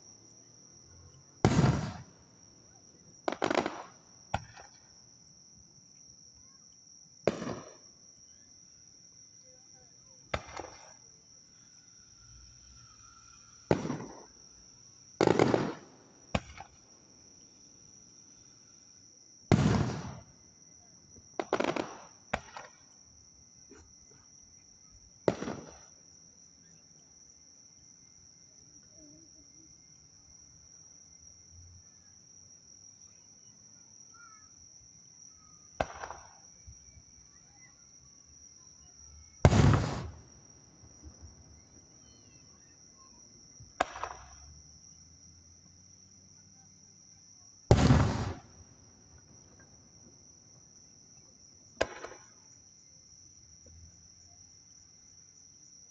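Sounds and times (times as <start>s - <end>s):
insect trill: 0.0s - 55.9s
firework booms: 1.4s - 2.2s, 3.2s - 4.8s, 7.2s - 7.8s, 10.3s - 11.0s, 13.7s - 14.3s, 15.2s - 16.8s, 19.5s - 20.4s, 21.4s - 22.8s, 25.2s - 26.0s, 35.8s - 36.4s, 39.4s - 41.3s, 43.7s - 44.4s, 47.7s - 48.8s, 51.8s - 52.3s.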